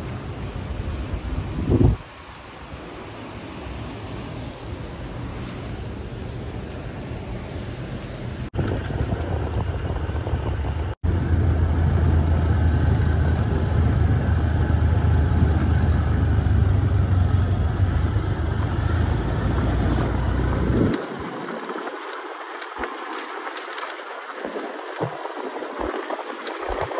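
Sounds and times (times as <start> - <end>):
waterfall roaring: 0.0 - 26.9.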